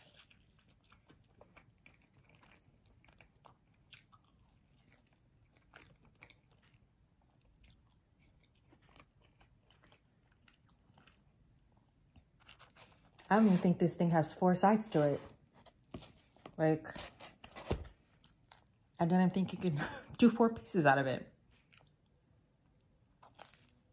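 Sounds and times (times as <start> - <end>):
chewing food: 0.0 - 13.3, 21.5 - 23.9.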